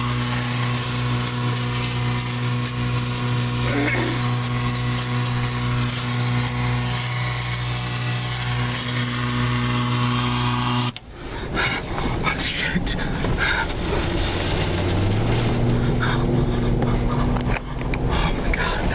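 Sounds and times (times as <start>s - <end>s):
machine-like buzzing hum: 0.0s - 11.1s.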